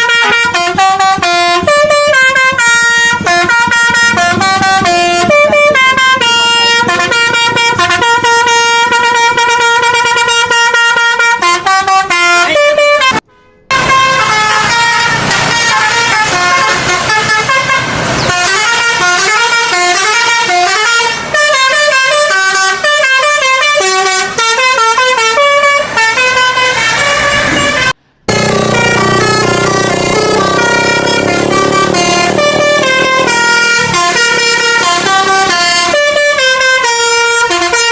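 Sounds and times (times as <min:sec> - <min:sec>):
bus horns tooting melodies: 0:00.0 - 0:37.9.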